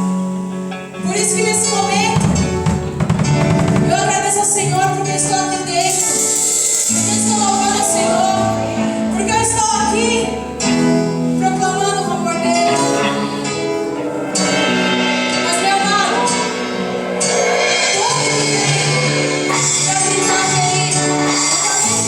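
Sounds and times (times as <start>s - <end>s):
worship music chords: 0.0s - 22.0s
person singing: 11.4s - 14.8s, 17.4s - 22.0s.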